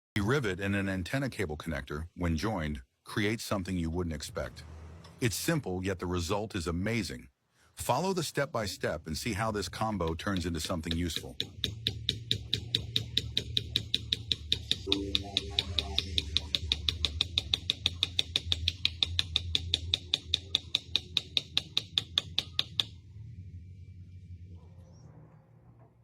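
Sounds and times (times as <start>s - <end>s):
low hum: 9.0s - 20.6s, 22.0s - 26.0s
rapid ticking: 9.2s - 23.0s.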